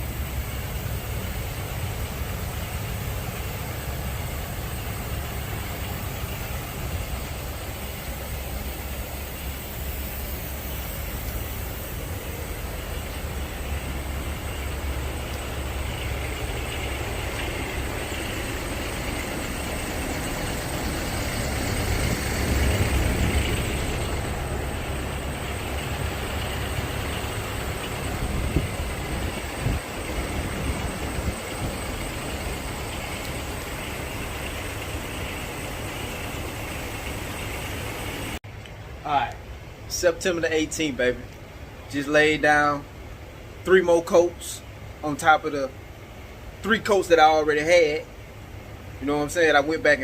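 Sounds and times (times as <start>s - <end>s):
rushing noise with low rumble: 0.0s - 38.4s.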